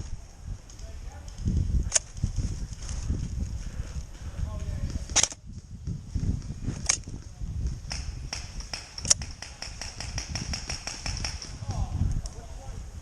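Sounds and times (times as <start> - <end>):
wind and rain on microphone: 0.0 - 13.0
airsoft gunfire: 7.9 - 11.7.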